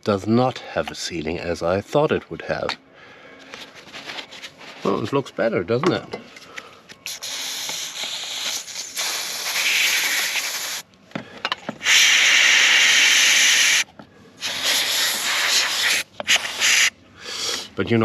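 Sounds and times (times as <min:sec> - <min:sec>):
pressurised spray hissing: 0:07.0 - 0:10.9, 0:11.8 - 0:17.6.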